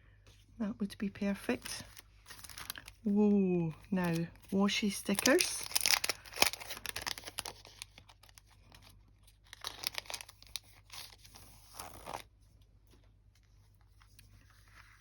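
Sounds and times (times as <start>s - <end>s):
packaging crinkling and rustling: 1.3s - 12.3s.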